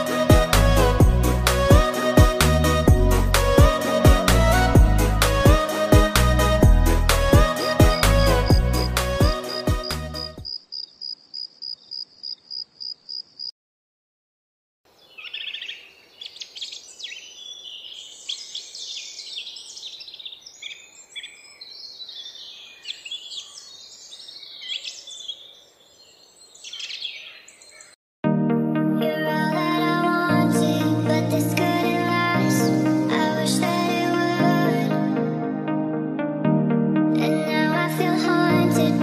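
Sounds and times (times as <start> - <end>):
small birds twittering: 14.9 - 28.0.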